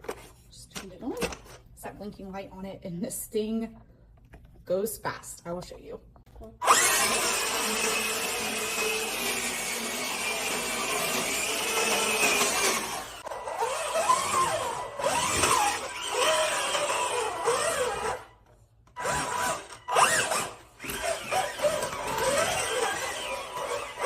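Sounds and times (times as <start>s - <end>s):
toy tank motors whining: 6.6s - 24.0s.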